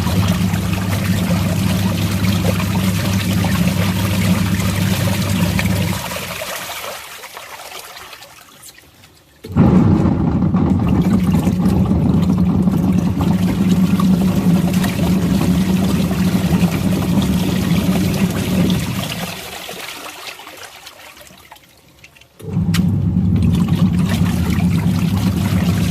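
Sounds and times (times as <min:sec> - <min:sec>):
toy washing machine motor hum: 0:00.0 - 0:06.4, 0:11.0 - 0:19.4, 0:22.5 - 0:25.9
water sloshing: 0:00.0 - 0:25.9.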